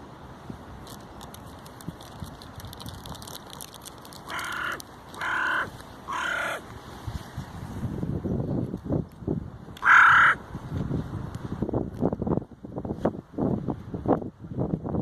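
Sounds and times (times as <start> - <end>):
crow cawing: 4.2 - 6.6, 9.8 - 10.4.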